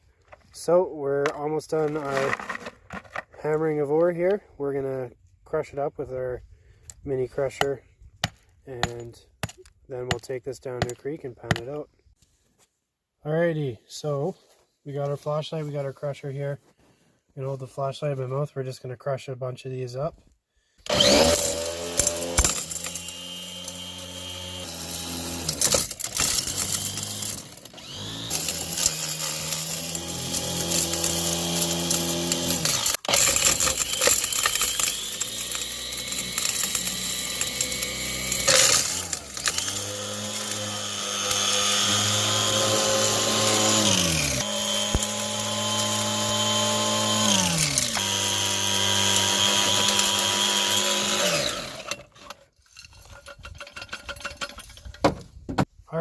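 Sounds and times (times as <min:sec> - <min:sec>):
rock crusher grinding rock: 0:00.6 - 0:04.9, 0:20.9 - 0:55.1
motor revving: 0:20.9 - 0:51.9.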